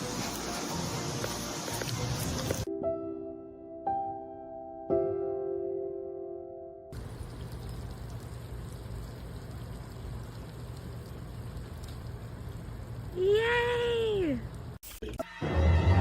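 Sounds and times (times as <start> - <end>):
steady hiss with low hum: 7.0 - 14.8.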